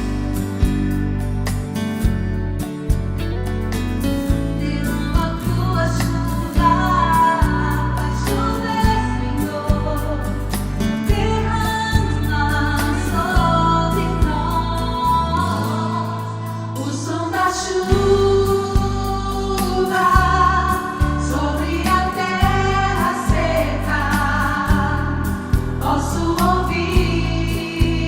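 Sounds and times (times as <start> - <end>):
gospel singing with choir: 11.1 - 28.0.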